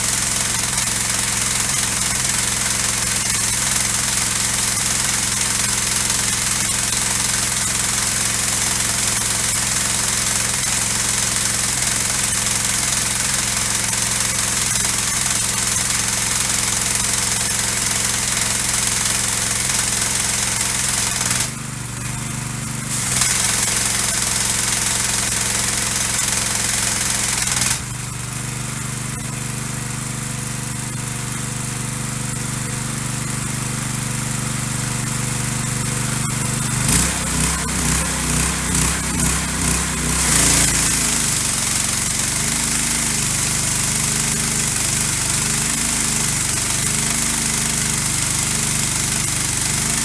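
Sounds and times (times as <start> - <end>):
pressure washer engine running: 0.0 - 50.0
water spray hissing: 22.8 - 27.9, 35.1 - 50.0.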